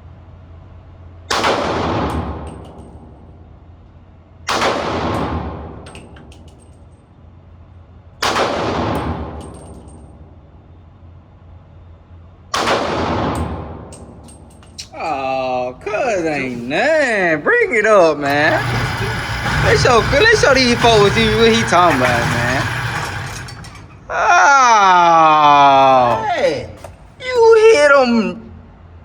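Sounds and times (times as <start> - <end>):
pistol shots with echoing tail: 1.3 - 3.0, 4.5 - 6.2, 8.2 - 10.0, 12.5 - 14.2
light metallic clinks: 13.9 - 15.2.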